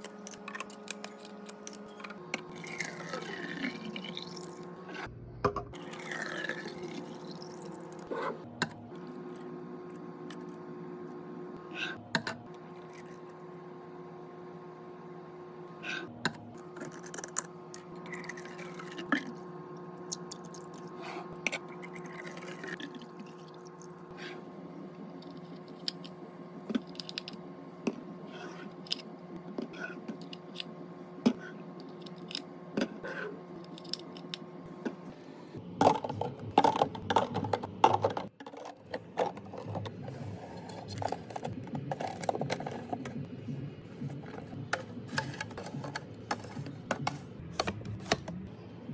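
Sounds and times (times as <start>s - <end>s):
fridge hum: 0.0s - 48.9s
objects clattering: 35.8s - 43.2s.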